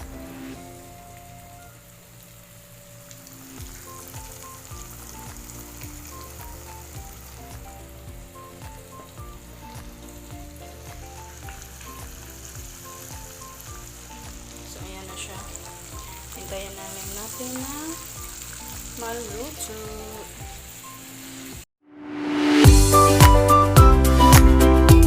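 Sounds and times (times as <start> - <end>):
chicken sizzling in hot oil: 0.1 - 21.7
background music with beat: 3.6 - 15.0, 22.0 - 25.0.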